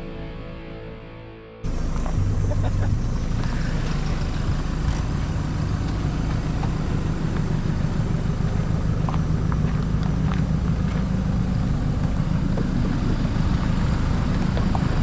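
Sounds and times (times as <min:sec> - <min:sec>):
vehicle engine rumbling: 0:01.6 - 0:15.0.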